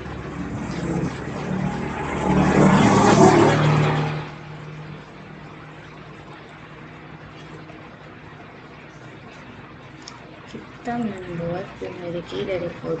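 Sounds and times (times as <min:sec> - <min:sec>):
motor vehicle passing: 0:00.0 - 0:09.3
steady low hum: 0:00.0 - 0:13.0.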